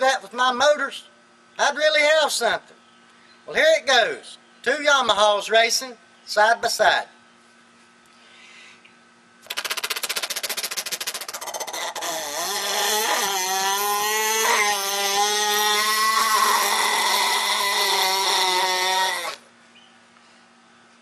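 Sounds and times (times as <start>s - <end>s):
man imitating motorcycle engines: 9.5s - 19.5s.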